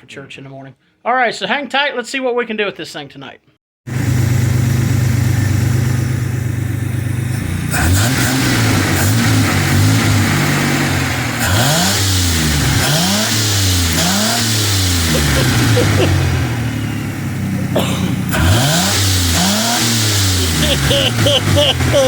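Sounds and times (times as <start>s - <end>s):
car engine revving: 3.9s - 22.0s.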